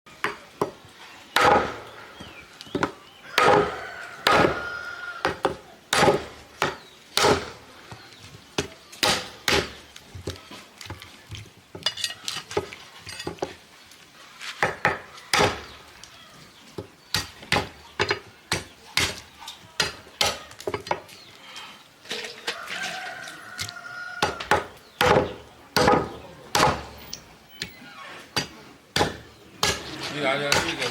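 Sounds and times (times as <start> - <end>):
cleaver chopping on wood: 1.4 - 7.6, 8.6 - 10.4, 14.6 - 15.8, 16.8 - 21.0, 23.6 - 27.0, 28.4 - 30.9.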